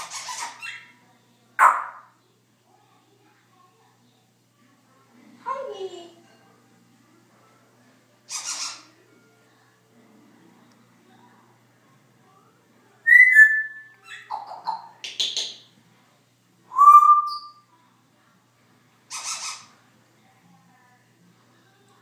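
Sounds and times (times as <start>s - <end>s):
parrot raspy squawks: 0.0s - 0.9s, 1.6s - 2.1s, 8.3s - 8.9s, 19.1s - 19.7s
parrot whistling: 13.1s - 14.0s, 16.7s - 17.6s.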